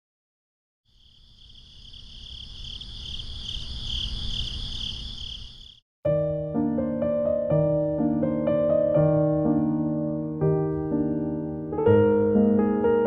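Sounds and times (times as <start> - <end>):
crickets chirping: 0.9 - 5.8
piano music: 6.1 - 13.0.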